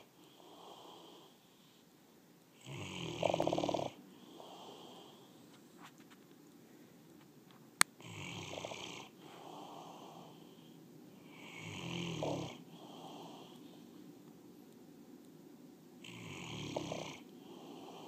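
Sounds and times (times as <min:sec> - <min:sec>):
dog snoring: 0:02.6 - 0:05.4, 0:08.0 - 0:10.6, 0:11.2 - 0:13.8, 0:16.0 - 0:18.0.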